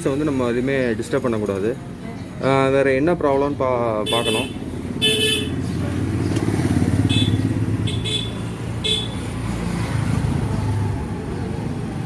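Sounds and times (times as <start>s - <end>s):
scooter engine idling and misfiring: 4.8s - 9.2s.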